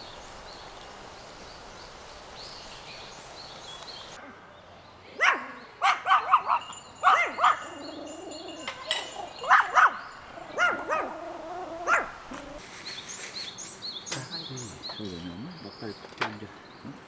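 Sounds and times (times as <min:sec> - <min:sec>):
small dog yapping: 0:09.4 - 0:12.6.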